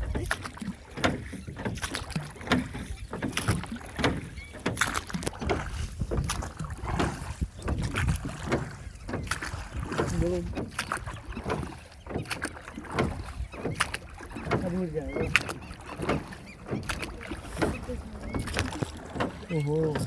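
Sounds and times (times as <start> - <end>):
paddle splashes and knocks: 0.0 - 20.0.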